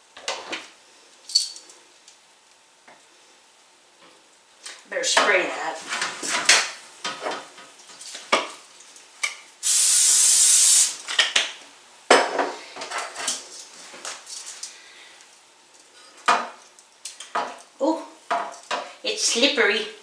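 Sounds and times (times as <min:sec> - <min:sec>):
cooking spray hissing: 0:09.6 - 0:11.1.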